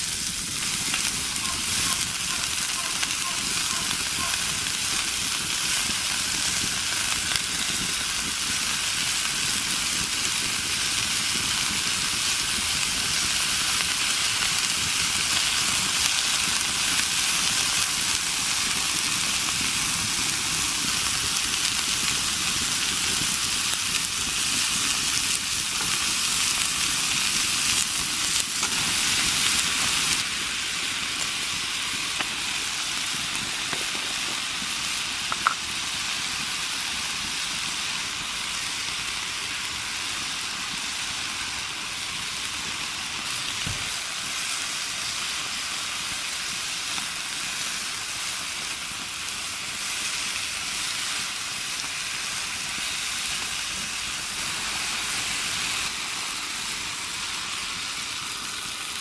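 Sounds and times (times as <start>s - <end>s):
food sizzling in a frying pan: 0.0s - 59.0s.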